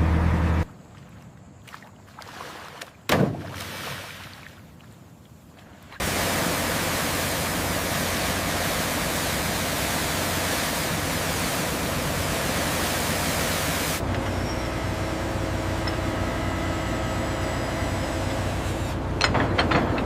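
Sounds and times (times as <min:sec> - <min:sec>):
loud rushing hiss: 0:06.0 - 0:14.0.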